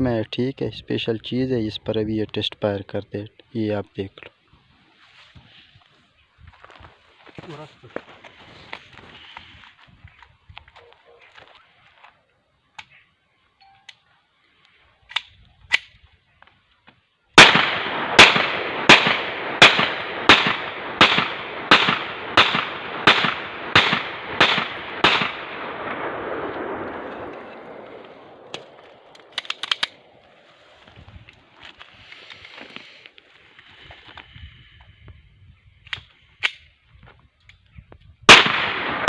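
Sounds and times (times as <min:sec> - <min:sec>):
gunshot echo: 0:17.4 - 0:28.8, 0:38.3 - 0:39.0
pistol shots: 0:17.4 - 0:30.1, 0:38.3 - 0:39.0.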